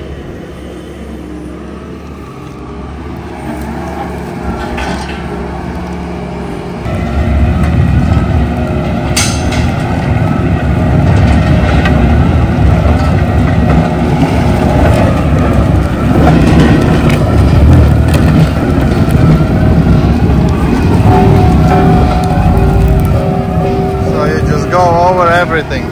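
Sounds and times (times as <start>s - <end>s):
diesel engine running hard: 0.0s - 25.9s
heavy grinding of stumps: 10.8s - 25.0s
wood cracking: 10.9s - 24.2s.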